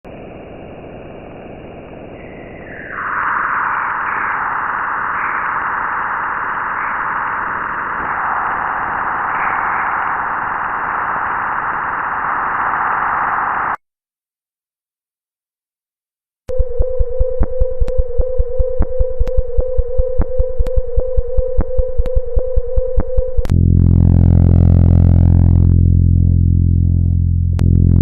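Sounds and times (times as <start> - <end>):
static-like hiss: 0.1 - 13.8.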